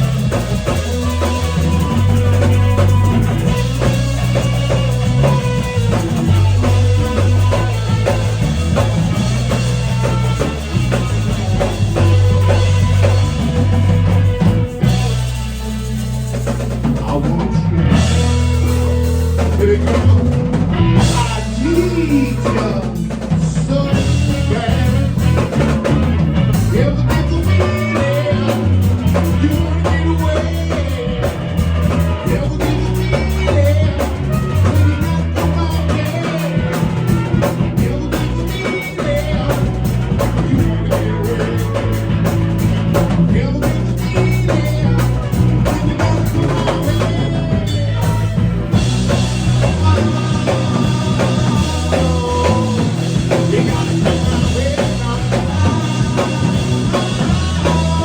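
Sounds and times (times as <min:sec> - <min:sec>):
bass line: 0:00.0 - 0:58.0
drum kit beat: 0:00.0 - 0:58.0
person singing: 0:00.0 - 0:58.0
rock band playing: 0:00.0 - 0:58.0.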